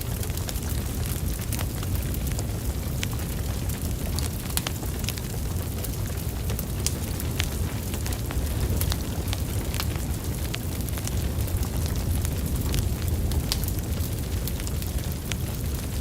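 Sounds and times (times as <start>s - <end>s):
fire crackling and popping: 0.0s - 16.0s
low rumble of flames: 0.0s - 16.0s.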